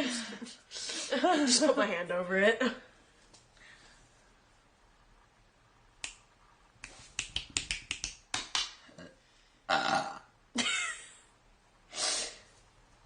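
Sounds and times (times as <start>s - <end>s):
person burping: 8.9s - 10.4s.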